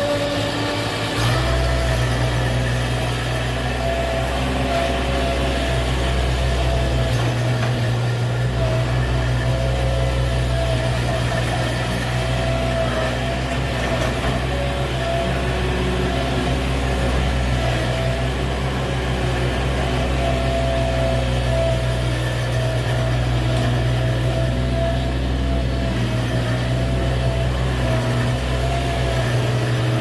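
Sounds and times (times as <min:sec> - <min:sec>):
farm machine engine droning: 0:00.0 - 0:30.0.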